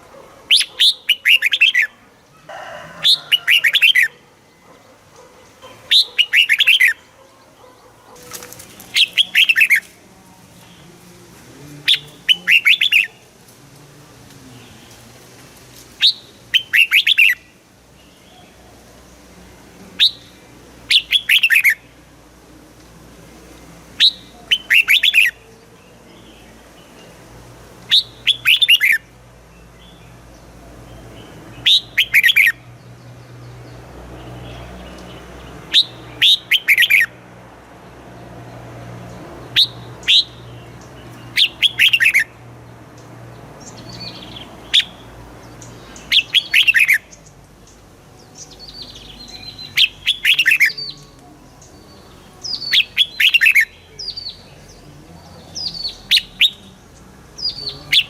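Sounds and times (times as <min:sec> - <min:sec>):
bird singing whistled notes: 0:11.9 - 0:13.2, 0:16.0 - 0:17.5, 0:20.0 - 0:20.3, 0:20.9 - 0:21.8, 0:24.0 - 0:25.4, 0:27.9 - 0:29.0, 0:31.6 - 0:32.6, 0:35.7 - 0:37.1, 0:39.6 - 0:40.5, 0:41.3 - 0:42.3, 0:43.7 - 0:47.3, 0:48.3 - 0:54.9, 0:55.5 - 0:56.8.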